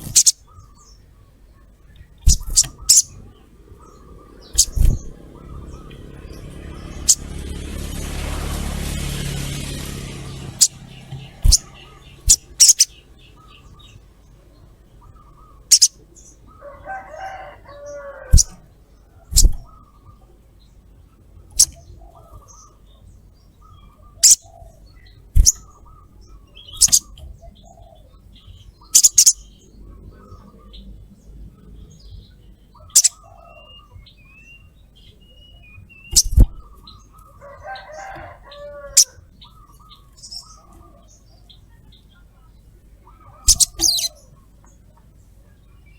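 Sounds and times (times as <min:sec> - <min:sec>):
soft short bird chirps: 0:43.3 - 0:44.1.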